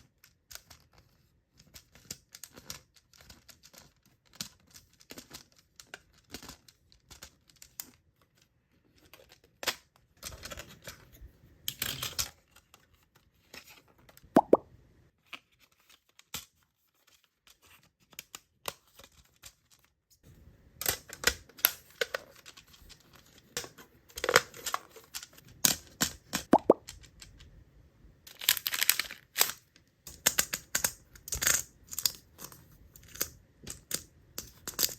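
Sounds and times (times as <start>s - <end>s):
small items tapping and clicking: 14.4s - 14.6s, 20.8s - 27.5s, 28.3s - 34.9s.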